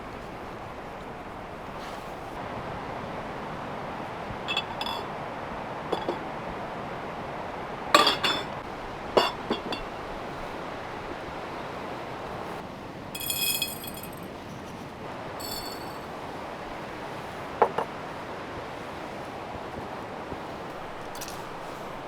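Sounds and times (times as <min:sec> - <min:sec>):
glass jars clinking: 0:04.5 - 0:05.1, 0:05.9 - 0:06.2, 0:07.9 - 0:08.6, 0:09.2 - 0:10.0, 0:13.2 - 0:14.2, 0:15.4 - 0:16.0.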